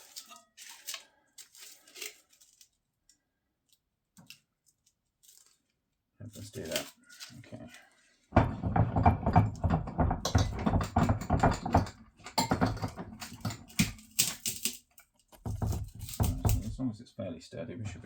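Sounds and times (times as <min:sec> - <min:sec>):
hard objects clattering: 0:00.0 - 0:02.7, 0:08.3 - 0:16.8.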